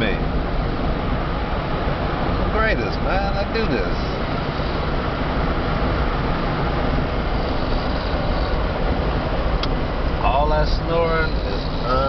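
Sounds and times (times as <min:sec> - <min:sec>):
car interior road and engine rumble: 0:00.0 - 0:12.0.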